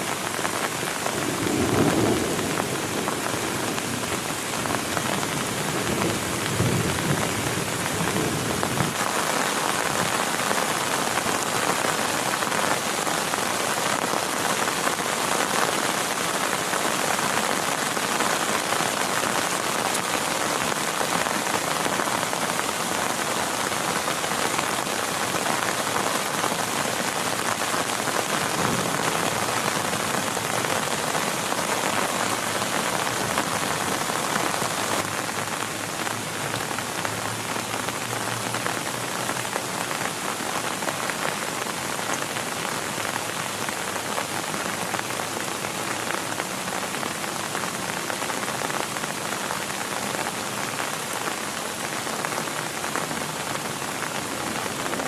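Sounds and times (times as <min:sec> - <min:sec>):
heavy rain on a tent: 0:00.0 - 0:55.0.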